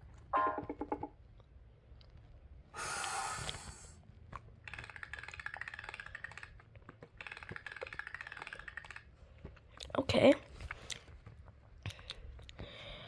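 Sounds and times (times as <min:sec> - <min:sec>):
loud burst of breath: 0:02.8 - 0:03.9
computer keyboard typing: 0:04.6 - 0:09.2.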